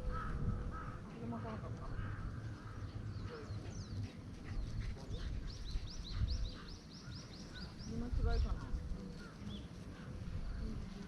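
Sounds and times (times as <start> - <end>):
bird chirping: 0.9 - 8.6.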